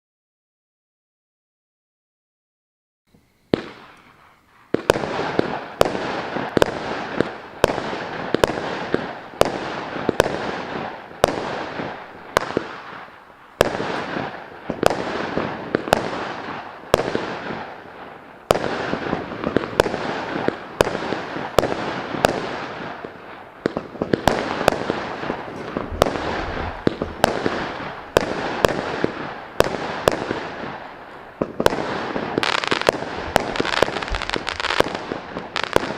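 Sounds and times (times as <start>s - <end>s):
firework cake bangs: 18.5s - 35.9s.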